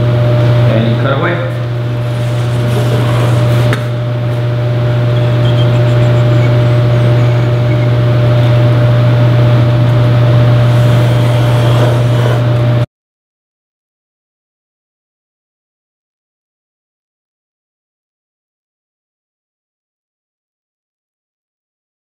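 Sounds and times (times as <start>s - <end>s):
loud machine hum: 0.0s - 12.9s.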